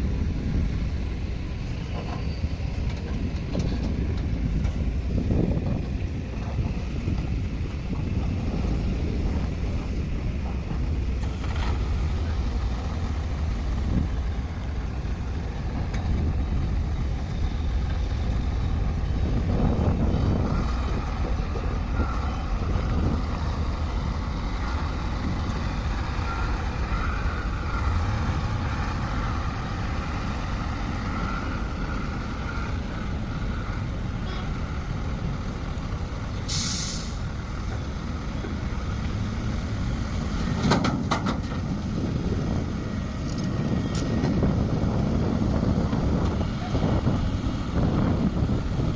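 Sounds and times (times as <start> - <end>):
diesel engine running: 0.0 - 48.9
short sharp hiss: 36.5 - 37.2.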